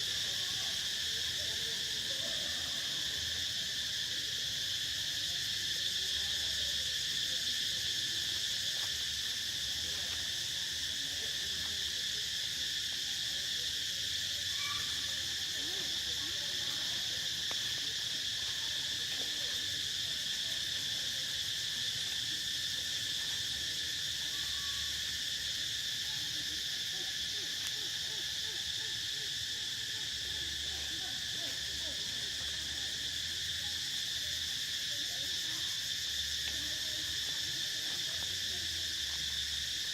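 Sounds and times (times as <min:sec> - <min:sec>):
insects droning: 0:00.0 - 0:39.9.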